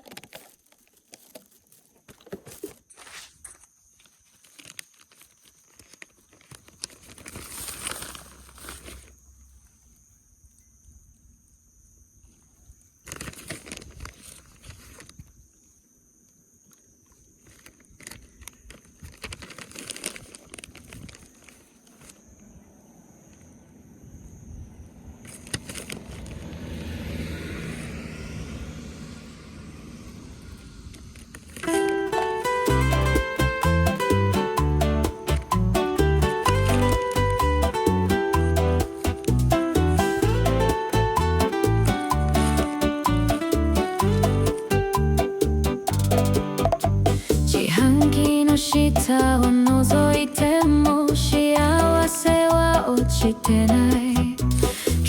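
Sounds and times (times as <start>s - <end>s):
rustling: 0.0s - 10.1s, 13.0s - 15.3s, 17.0s - 22.3s, 25.2s - 26.6s, 30.8s - 44.6s
vehicle passing: 22.7s - 33.4s, 36.0s - 46.0s.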